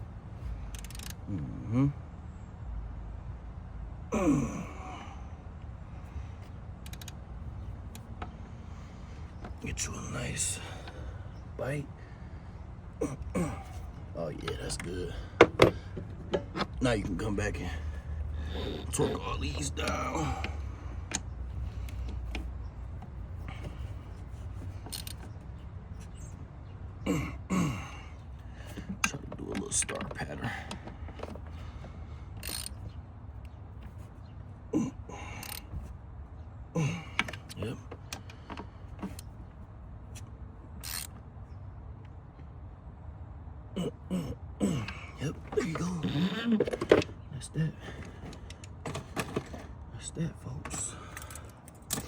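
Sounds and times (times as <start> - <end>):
steady low hum: 0.0 - 52.0
man sighing: 4.1 - 5.2, 13.0 - 15.9, 36.8 - 37.7.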